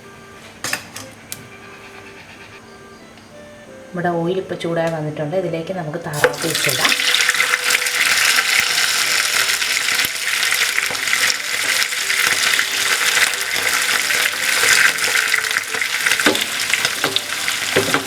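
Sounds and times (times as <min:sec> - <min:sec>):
meat sizzling in hot oil: 0:06.2 - 0:18.0
oil popping: 0:06.2 - 0:18.0.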